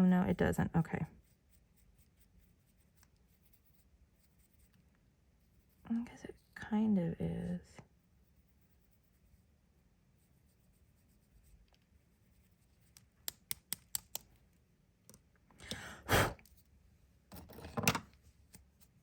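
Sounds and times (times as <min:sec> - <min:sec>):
rubbing or brushing sounds: 0:00.8 - 0:14.2.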